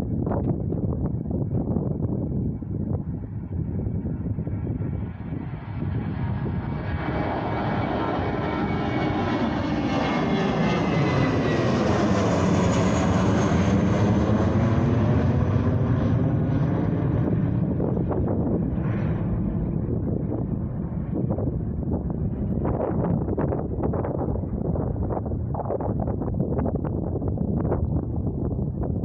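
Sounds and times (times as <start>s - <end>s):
aeroplane engines passing: 0.1s - 29.0s.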